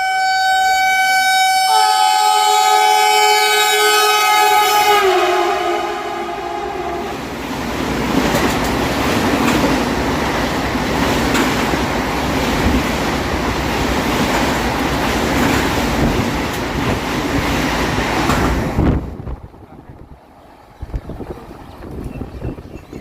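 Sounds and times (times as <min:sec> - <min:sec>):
locomotive horn: 0:00.0 - 0:07.3
train rushing past: 0:00.0 - 0:23.0
wheels clacking on rail joints: 0:07.6 - 0:18.9.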